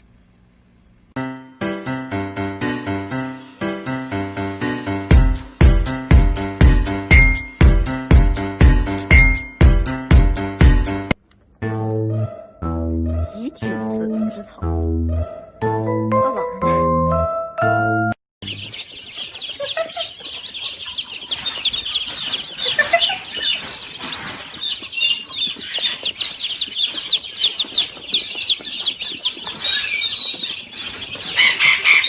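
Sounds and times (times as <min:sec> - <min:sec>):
flock of birds chirping: 0:18.4 - 0:32.0.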